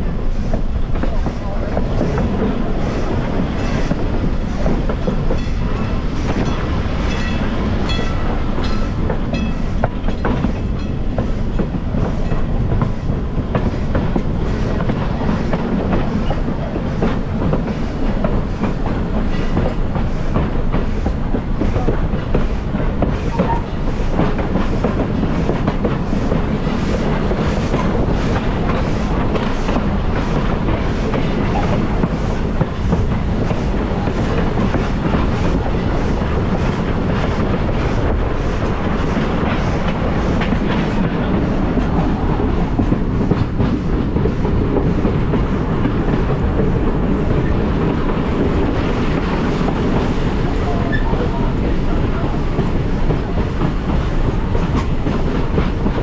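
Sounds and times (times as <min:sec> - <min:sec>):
train wheels clickety-clack: 0:00.0 - 0:56.0.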